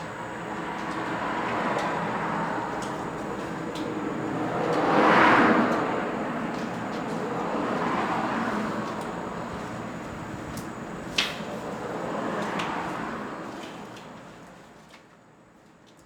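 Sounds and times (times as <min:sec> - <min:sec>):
vehicles passing by: 0:00.0 - 0:11.0.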